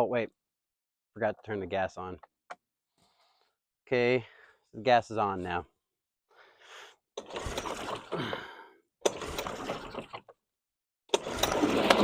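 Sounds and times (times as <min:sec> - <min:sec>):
outboard engine firing: 0:07.2 - 0:10.3, 0:11.1 - 0:12.0
recoil starter cord pulled: 0:07.2 - 0:10.4, 0:11.1 - 0:12.0.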